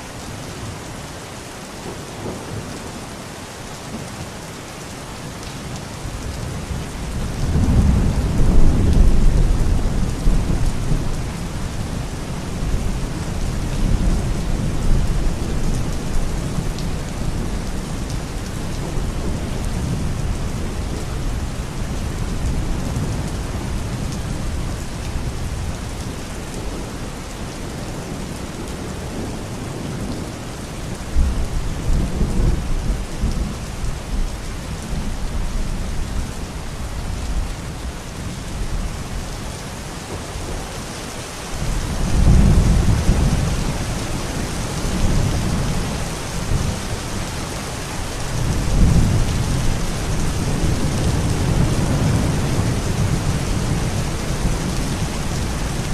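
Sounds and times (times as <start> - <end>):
steady rain falling: 0.0 - 55.9
rolling thunder: 7.3 - 21.5.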